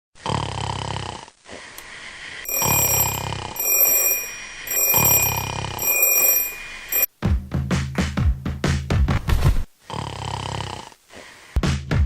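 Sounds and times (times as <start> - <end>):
high electronic alarm tone: 2.5 - 7.1.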